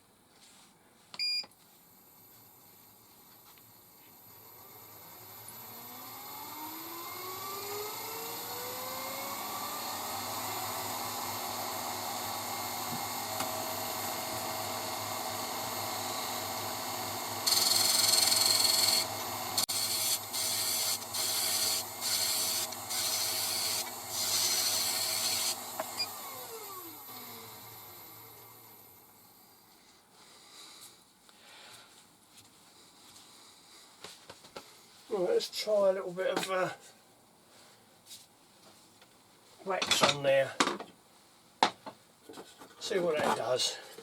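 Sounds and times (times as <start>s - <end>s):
wood lathe motor: 4.3s - 28.9s
turning tool cutting wood: 5.2s - 28.6s.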